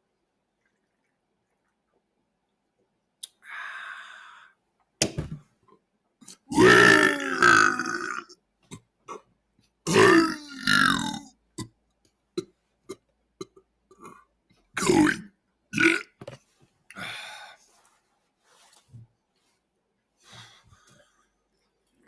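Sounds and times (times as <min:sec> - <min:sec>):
man belching loudly: 0:06.5 - 0:08.4, 0:09.9 - 0:11.3, 0:14.8 - 0:16.2.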